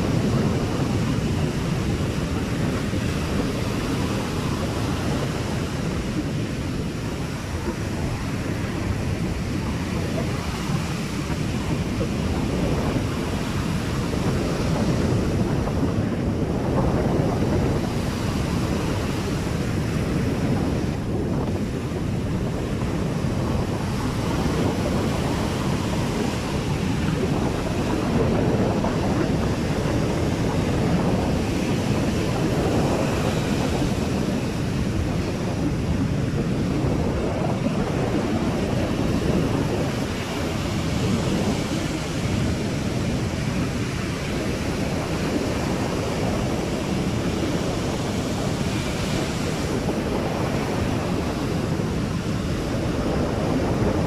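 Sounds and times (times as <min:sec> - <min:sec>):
surf breaking on beach: 0:00.0 - 0:54.0
wind buffeting microphone: 0:00.0 - 0:54.0.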